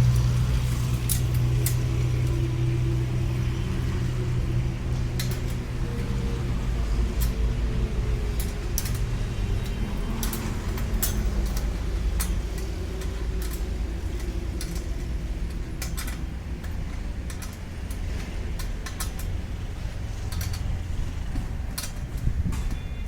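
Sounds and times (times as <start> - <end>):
steady low hum: 0.0 - 22.5
metal fittings clinking: 8.1 - 19.4.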